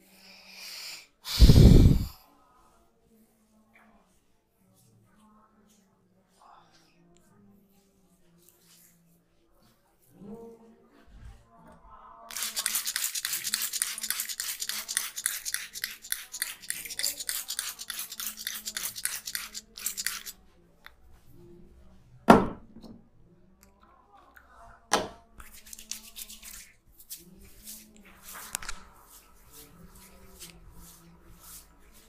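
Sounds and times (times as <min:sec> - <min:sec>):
hands rubbing and tapping on hair: 0:12.3 - 0:20.4, 0:25.4 - 0:32.0.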